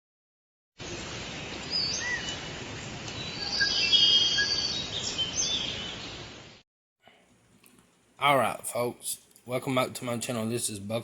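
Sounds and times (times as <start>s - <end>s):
steady outdoor background noise: 0.8s - 6.6s
birds chirping and whistling: 1.4s - 2.5s, 3.1s - 6.3s.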